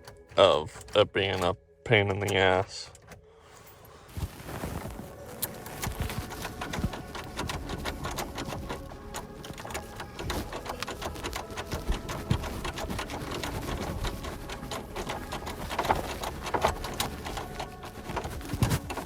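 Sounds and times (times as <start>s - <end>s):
key jiggling in ignition lock: 5.5s - 19.0s.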